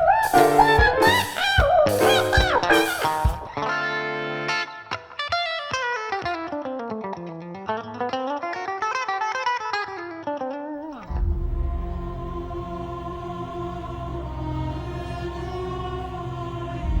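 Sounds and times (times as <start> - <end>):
guitar chord and plucked notes: 0.0 - 4.9.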